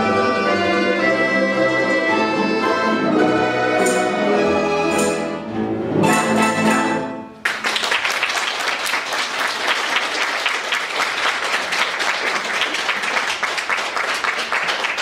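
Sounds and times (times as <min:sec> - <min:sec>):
audience applauding: 0:07.4 - 0:15.0.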